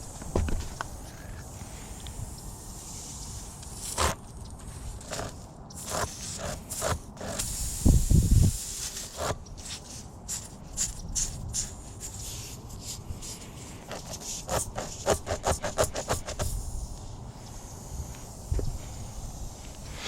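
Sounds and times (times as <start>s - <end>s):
heavy thump: 0.2s - 0.8s
hand tool scraping tire: 3.1s - 19.0s.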